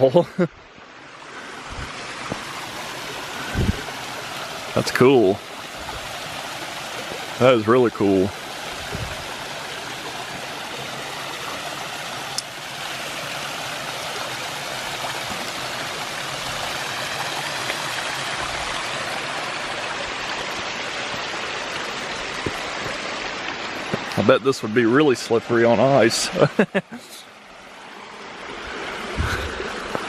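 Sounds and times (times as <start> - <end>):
water rushing over rock: 0.0 - 30.0.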